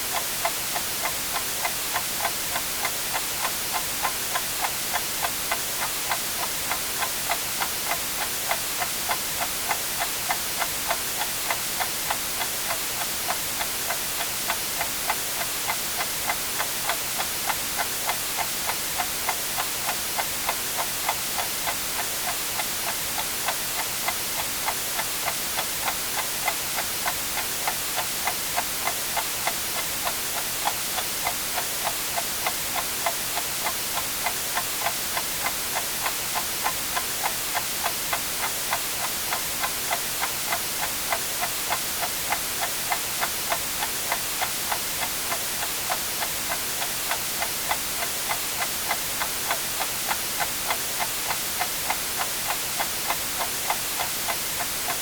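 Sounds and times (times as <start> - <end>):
white noise hiss: 0.0 - 55.0
clock ticking: 0.1 - 55.0.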